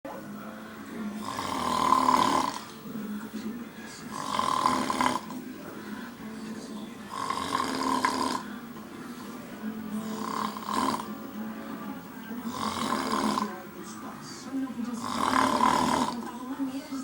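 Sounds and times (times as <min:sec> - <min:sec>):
man snoring: 0:01.1 - 0:02.8, 0:04.0 - 0:06.2, 0:07.0 - 0:09.3, 0:09.9 - 0:11.3, 0:12.4 - 0:13.7, 0:15.0 - 0:16.3.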